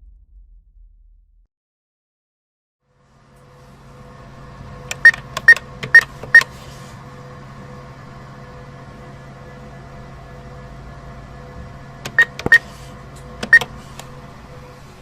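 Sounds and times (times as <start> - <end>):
steady machine hum: 2.8 - 15.0
keypad click with high beep: 4.9 - 6.5, 12.1 - 12.7, 13.4 - 13.7.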